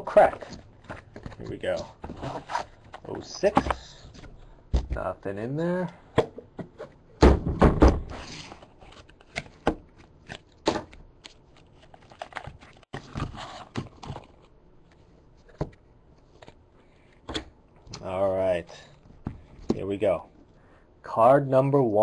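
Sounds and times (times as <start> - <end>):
cards tapping scraping and rustling: 0.1 - 4.9, 8.2 - 17.5.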